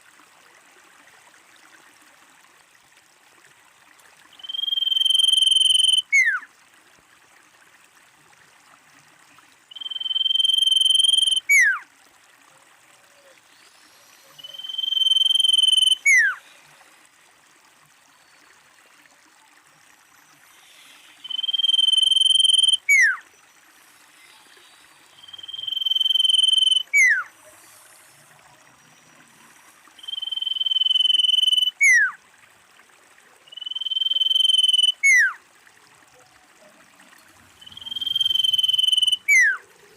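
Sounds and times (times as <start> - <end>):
bird whistling call: 4.4 - 6.4, 9.7 - 11.8, 14.2 - 16.4, 21.2 - 23.2, 25.1 - 27.3, 30.0 - 32.2, 33.5 - 35.4, 37.6 - 39.6.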